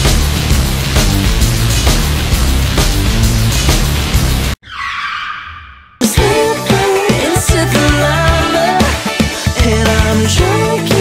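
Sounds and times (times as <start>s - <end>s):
upbeat pop music: 6.0s - 11.0s.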